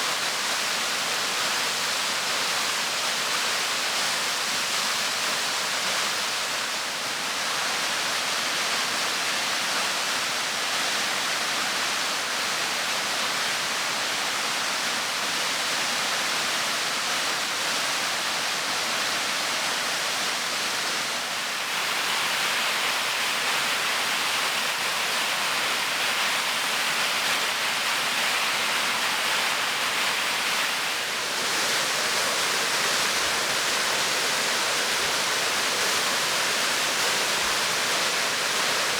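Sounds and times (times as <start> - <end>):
waterfall rushing: 21.2 - 38.9.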